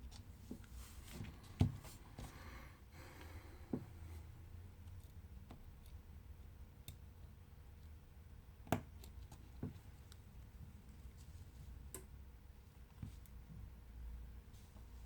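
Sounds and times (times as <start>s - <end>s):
small clicks and taps of tools: 6.8s - 8.0s, 8.6s - 10.3s.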